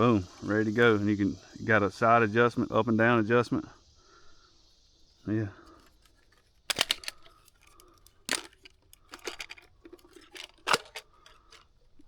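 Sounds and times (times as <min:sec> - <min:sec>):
plastic clicks and knocks: 0:06.7 - 0:12.0.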